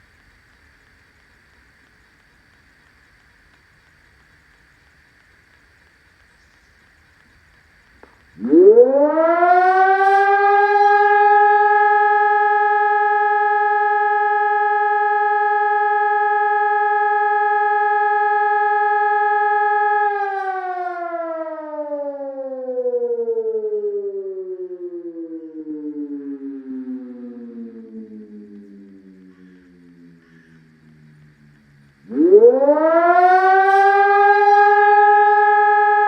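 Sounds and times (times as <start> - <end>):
siren wailing: 8.4 - 36.0.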